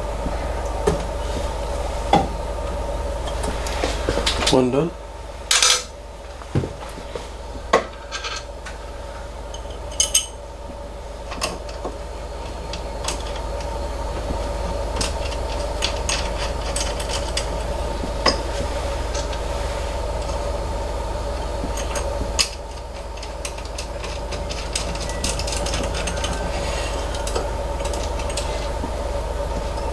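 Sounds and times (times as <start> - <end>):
steady hum: 0.0 - 29.9
metal parts and tools clinking: 8.0 - 8.5, 9.5 - 10.4, 15.0 - 19.4, 21.8 - 28.8.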